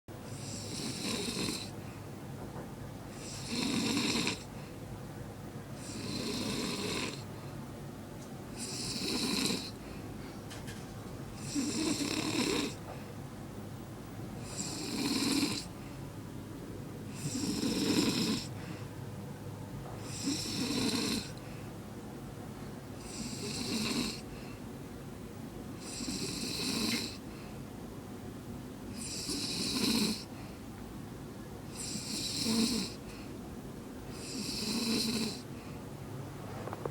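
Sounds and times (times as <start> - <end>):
person snoring: 0.3 - 1.7, 3.2 - 4.5, 5.8 - 7.2, 8.6 - 9.8, 11.4 - 12.8, 17.1 - 18.5, 20.1 - 21.4, 31.8 - 33.0, 34.2 - 35.5.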